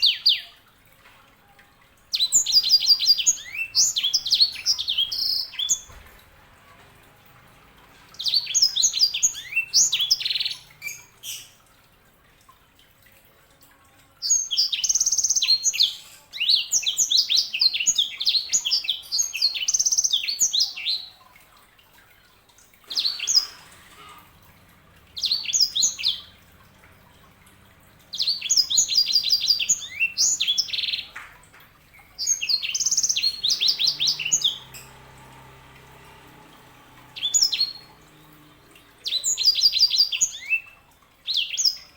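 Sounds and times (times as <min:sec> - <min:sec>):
canary twittering and trilling: 0:02.1 - 0:06.2, 0:08.0 - 0:11.6, 0:22.9 - 0:41.9.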